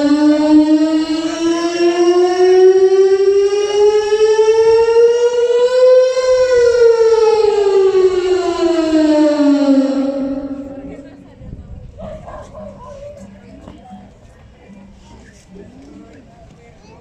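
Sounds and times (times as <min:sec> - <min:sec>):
siren wailing: 0:00.0 - 0:11.4.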